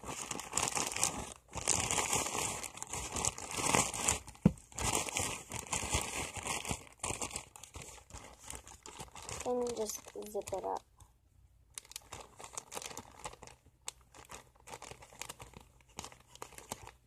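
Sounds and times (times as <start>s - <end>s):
plastic bag crinkling: 0.0s - 10.9s, 11.7s - 17.0s.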